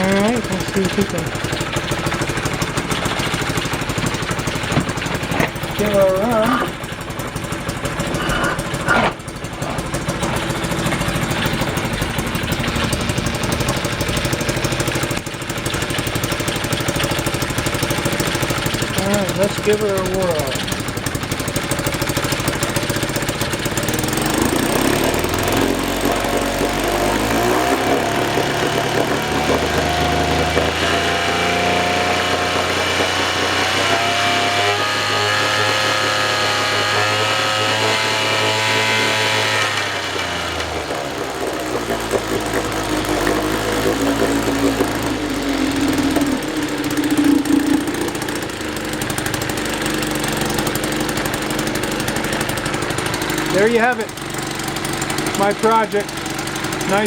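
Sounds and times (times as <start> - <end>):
two-stroke outboard motor running: 0.0 - 57.0.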